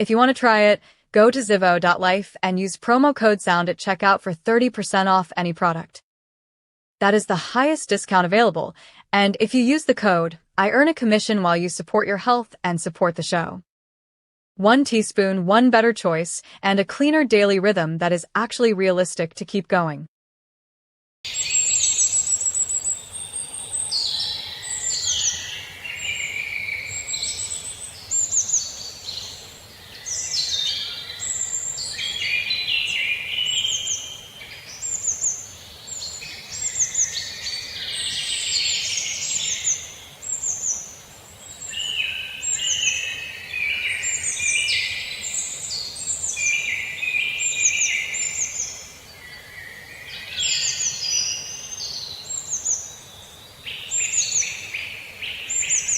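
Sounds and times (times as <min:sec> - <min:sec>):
chorus of birds singing: 0:21.3 - 0:55.9.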